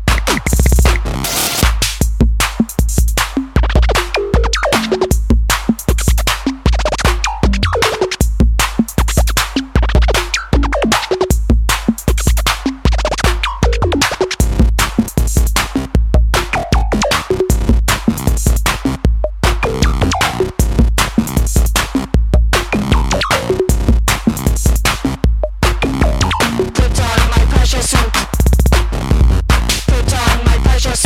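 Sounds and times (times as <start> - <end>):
record scratching: 0.0 - 1.8, 3.6 - 5.1, 6.2 - 8.2, 9.1 - 11.3, 12.2 - 15.7, 16.4 - 21.9, 22.6 - 31.0
electronic hip-hop music: 0.0 - 31.0
heavy drum-machine beat: 0.0 - 31.0.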